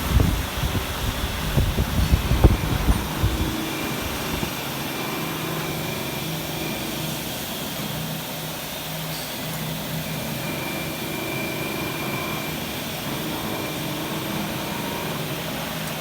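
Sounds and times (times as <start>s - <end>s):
low buffeting: 0.0s - 4.8s
knife grinding machine humming: 0.0s - 16.0s.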